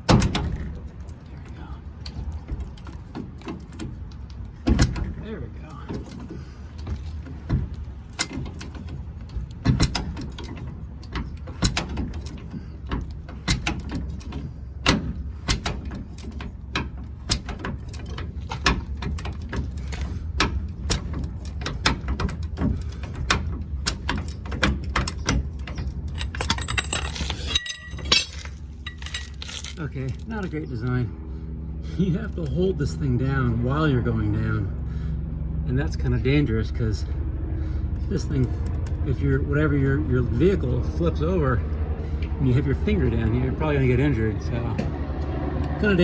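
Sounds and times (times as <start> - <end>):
low steady hum: 0.0 - 46.0
car jack mechanism clicking: 2.1 - 5.2, 5.9 - 29.9.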